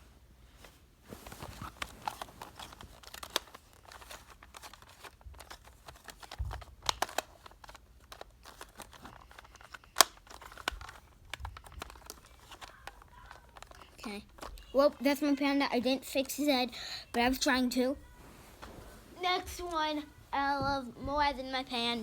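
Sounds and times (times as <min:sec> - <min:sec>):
puzzle cube twisting clicks: 0:01.8 - 0:14.7.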